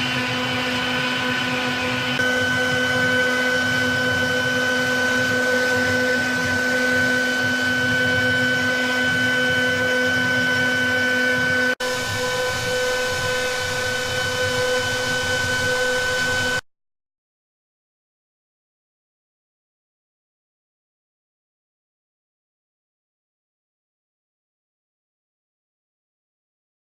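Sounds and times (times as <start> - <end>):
machining noise: 0.0 - 16.6
router spindle whine: 0.0 - 16.6.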